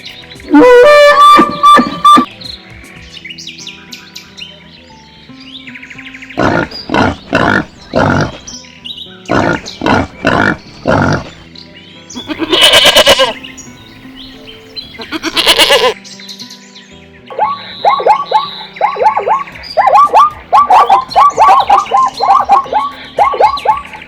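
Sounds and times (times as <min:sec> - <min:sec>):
background music: 0:00.0 - 0:24.0
animal calls: 0:00.5 - 0:02.3, 0:06.4 - 0:08.6, 0:09.3 - 0:11.4, 0:12.2 - 0:13.4, 0:15.0 - 0:16.0, 0:17.3 - 0:24.0.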